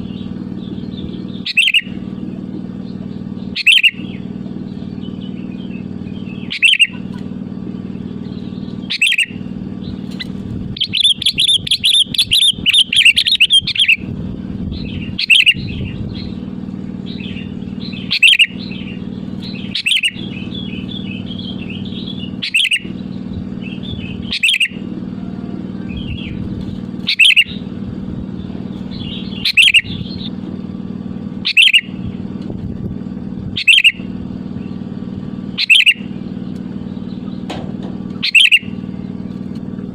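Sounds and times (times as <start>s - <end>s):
bulbul singing: 0.0s - 39.9s
steady low hum: 0.0s - 39.9s.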